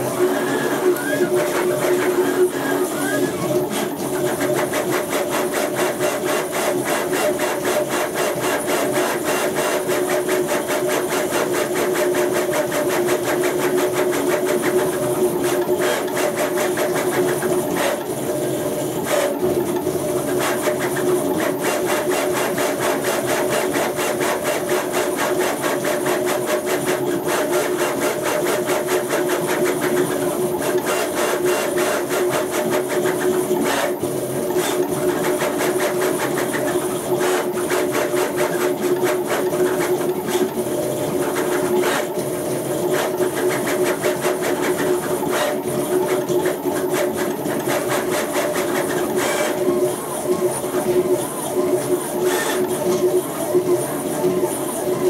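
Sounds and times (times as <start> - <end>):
stepper motors buzzing whine: 0.0 - 4.0.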